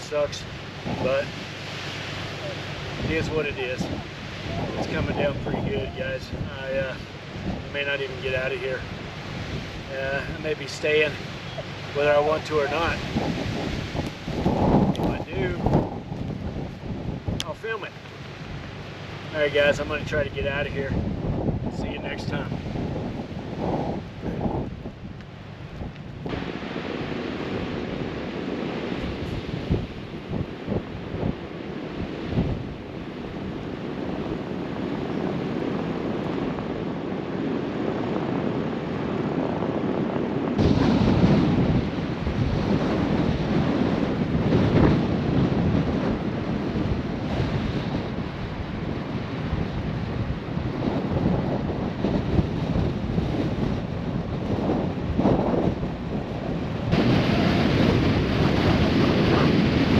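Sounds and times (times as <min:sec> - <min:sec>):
storm wind on microphone: 0:00.0 - 0:59.9.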